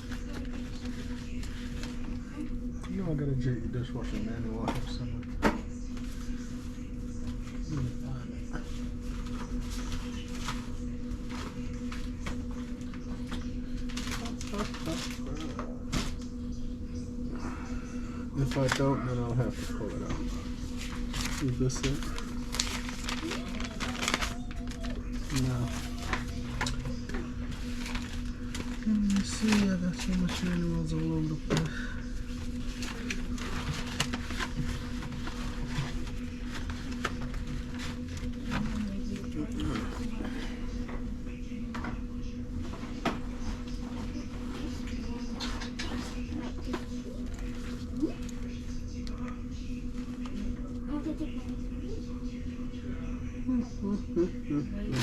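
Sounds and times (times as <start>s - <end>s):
low electrical hum: 0.0s - 55.0s
paper shuffling and leafing: 19.5s - 31.0s, 31.6s - 39.9s.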